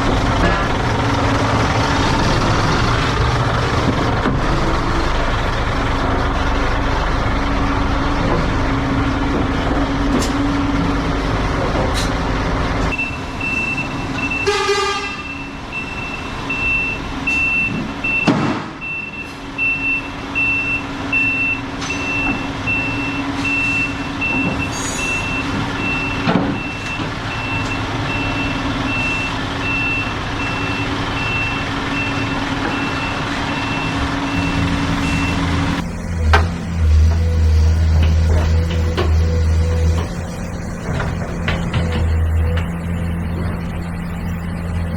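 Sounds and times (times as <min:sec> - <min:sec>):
engine humming: 0:00.0 - 0:44.9
truck reversing alarm beeping: 0:12.8 - 0:44.9
horn-like tone: 0:13.0 - 0:15.6, 0:34.3 - 0:41.5.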